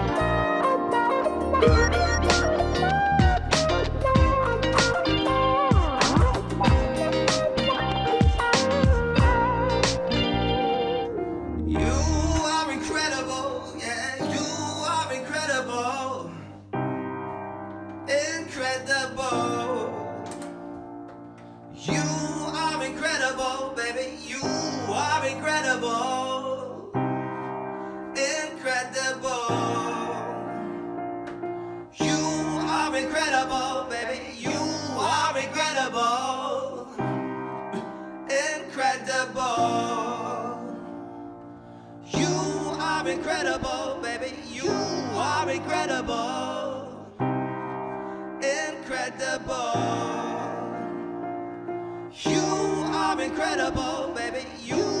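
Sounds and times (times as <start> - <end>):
low bass: 0.0 - 0.5, 1.5 - 10.7, 11.4 - 12.4
person singing wordless melody: 0.0 - 17.0, 18.0 - 55.0
electronic keyboard piano chords: 0.0 - 55.0
man singing wordless vocal runs: 32.0 - 37.0, 42.2 - 47.0, 52.2 - 55.0.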